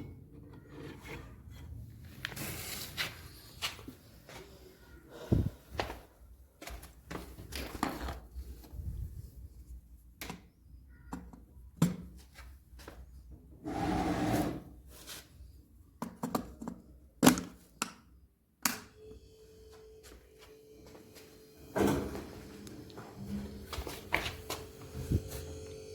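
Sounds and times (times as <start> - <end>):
rustling scrape: 0.7 - 3.6.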